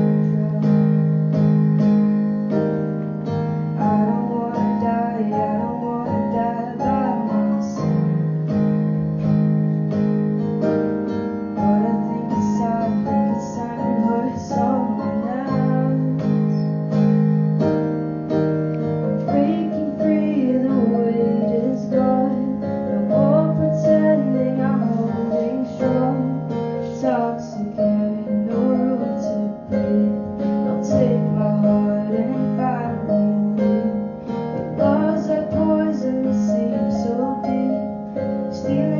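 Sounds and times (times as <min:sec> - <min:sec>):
woman singing: 0:00.0 - 0:01.0, 0:03.8 - 0:08.3, 0:11.6 - 0:16.7, 0:19.2 - 0:38.9
piano chords: 0:00.0 - 0:38.9.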